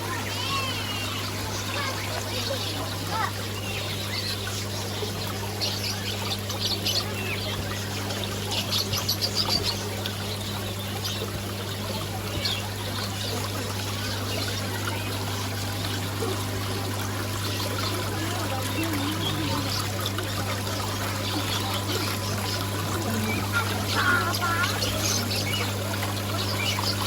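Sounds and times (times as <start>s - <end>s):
water trickling and splashing: 0.0s - 27.0s.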